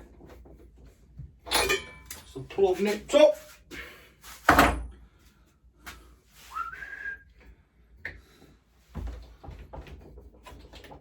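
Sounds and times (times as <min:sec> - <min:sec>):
person whistling: 0:06.5 - 0:07.3.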